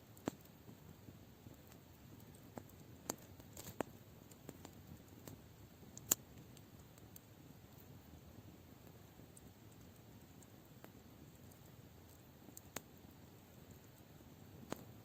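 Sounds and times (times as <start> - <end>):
campfire crackling and popping: 0.0 - 15.0
faint steady background noise: 0.0 - 15.0.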